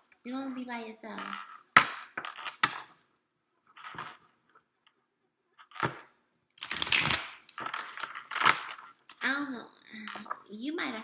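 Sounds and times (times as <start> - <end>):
cards being shuffled: 6.6 - 9.0.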